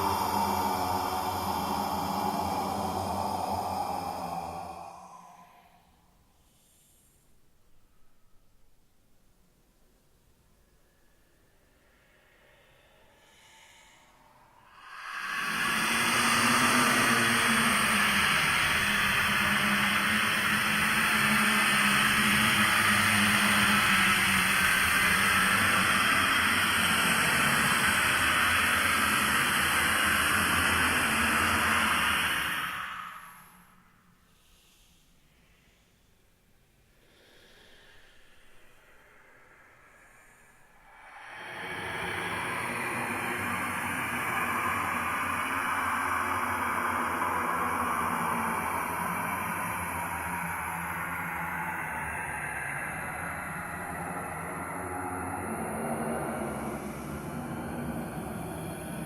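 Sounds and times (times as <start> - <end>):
airy hissing noise: 0.0 - 5.8, 12.4 - 35.6, 37.0 - 59.0
low hum: 38.3 - 59.0.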